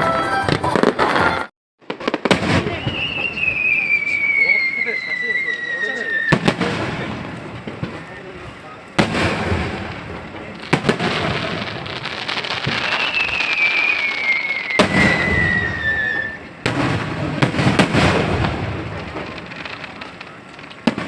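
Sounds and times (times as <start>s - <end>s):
fireworks crackling: 0.0s - 21.0s
firework shells bursting: 0.5s - 21.0s
long falling whistle: 2.6s - 6.4s, 12.7s - 16.5s.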